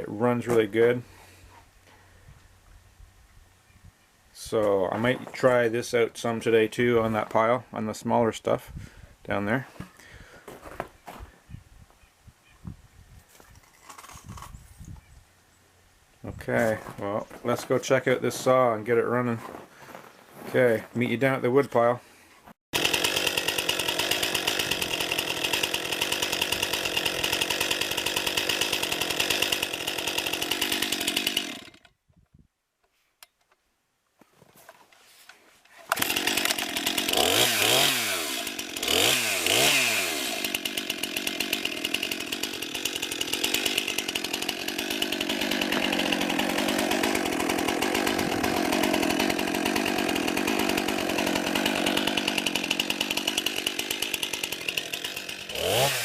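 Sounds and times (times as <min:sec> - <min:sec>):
chainsaw engine revving: 0:22.8 - 0:31.9, 0:35.9 - 0:56.0.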